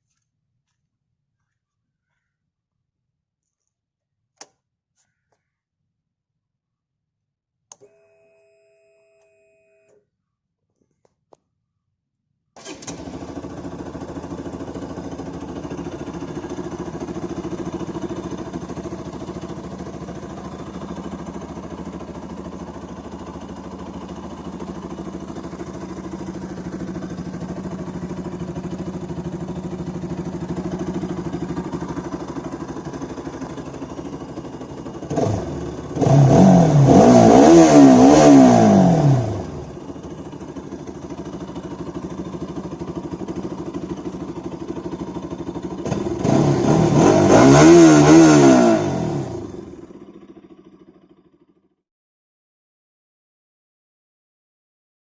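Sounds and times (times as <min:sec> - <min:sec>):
motorcycle engine idling and revving: 0:12.6 - 0:51.7.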